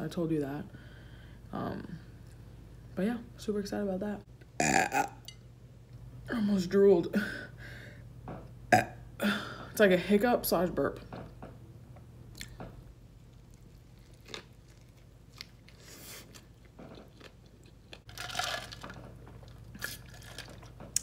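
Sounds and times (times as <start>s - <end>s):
person chewing a sandwich: 12.3s - 21.0s.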